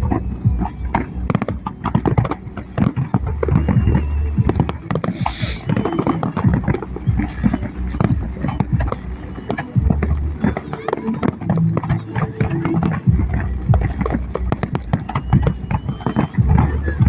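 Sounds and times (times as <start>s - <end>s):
fireworks hissing burst: 5.0s - 5.8s.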